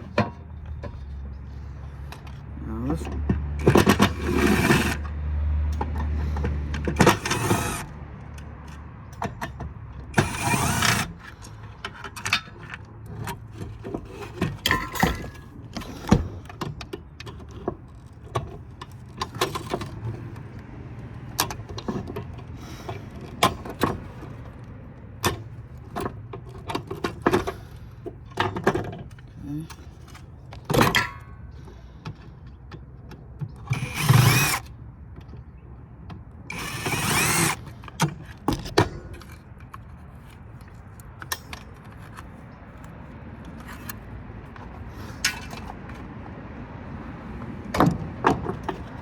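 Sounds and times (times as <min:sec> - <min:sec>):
power driver removing screws: 0:03.6 - 0:05.1, 0:06.0 - 0:08.0, 0:10.1 - 0:16.6, 0:33.6 - 0:34.7, 0:36.5 - 0:39.8
metallic clicks of screws and tools: 0:36.5 - 0:46.0.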